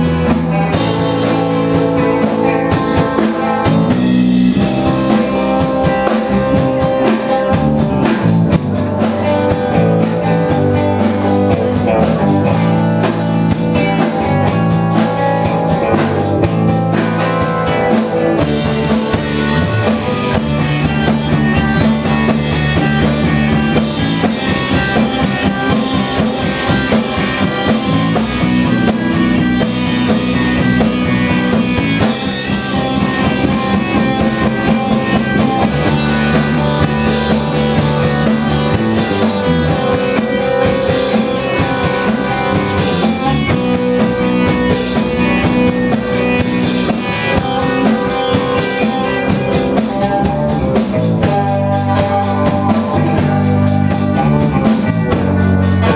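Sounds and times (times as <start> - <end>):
drum kit beat: 0.0 - 55.9
rock band playing: 0.0 - 55.9.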